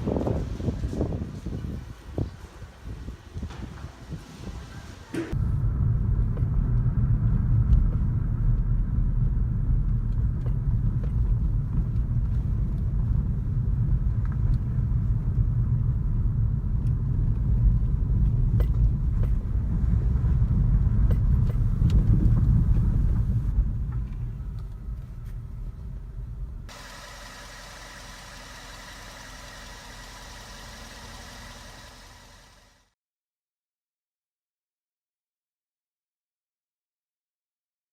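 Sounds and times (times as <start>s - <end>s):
car transmission rumbling: 5.2s - 32.8s.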